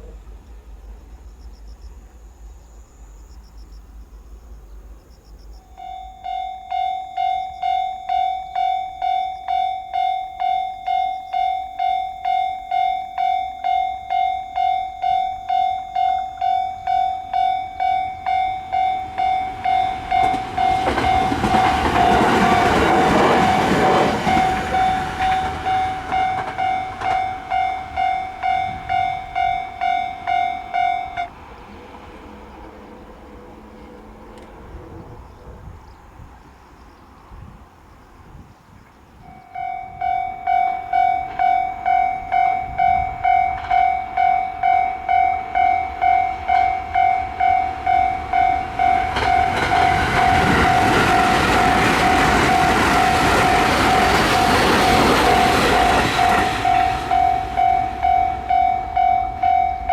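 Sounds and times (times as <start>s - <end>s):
train rumbling past: 0.0s - 59.9s
level-crossing alarm dinging: 5.7s - 31.3s, 39.3s - 59.9s.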